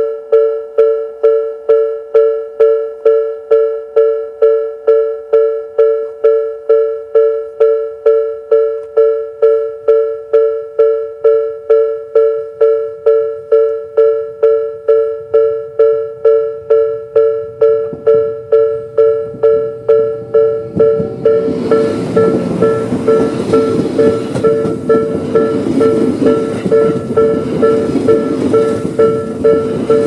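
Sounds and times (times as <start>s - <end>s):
level crossing electronic bell: 0.0s - 30.0s
low train rumble: 15.2s - 30.0s.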